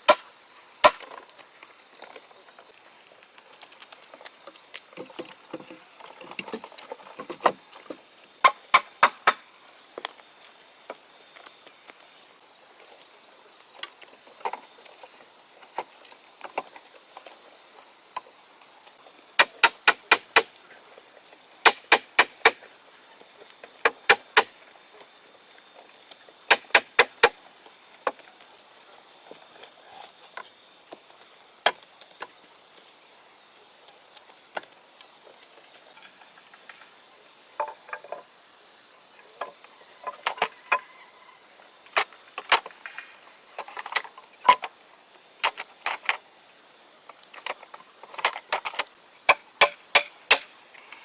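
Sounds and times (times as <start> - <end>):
sharp knocks: 26.5 - 27.3.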